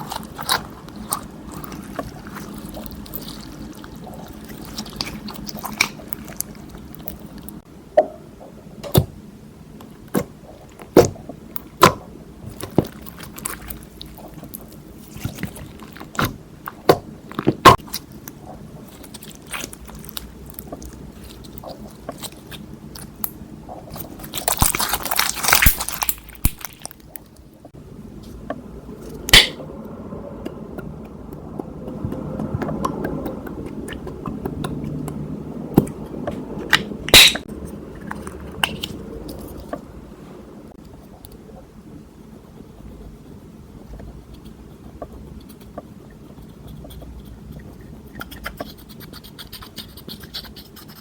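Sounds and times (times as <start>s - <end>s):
slime crackling: 0.0s - 7.6s, 17.3s - 27.4s
slime squishing: 0.0s - 7.6s, 10.1s - 27.4s.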